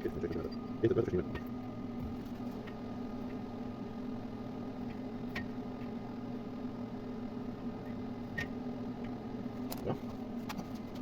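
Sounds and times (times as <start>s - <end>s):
low machine hum: 0.0s - 11.0s.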